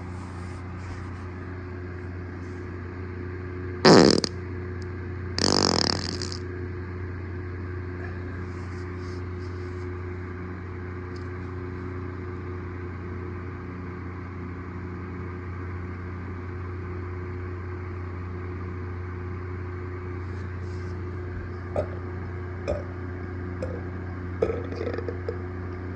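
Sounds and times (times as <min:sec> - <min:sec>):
loud fluttery fart: 0:03.8 - 0:04.4, 0:05.4 - 0:06.5, 0:21.7 - 0:22.0, 0:23.6 - 0:25.4
low hum: 0:20.2 - 0:25.9.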